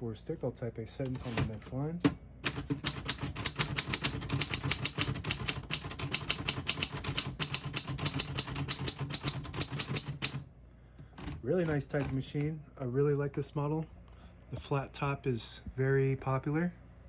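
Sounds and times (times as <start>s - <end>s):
typewriter key strikes: 1.1s - 1.7s, 2.4s - 10.4s, 11.2s - 12.3s.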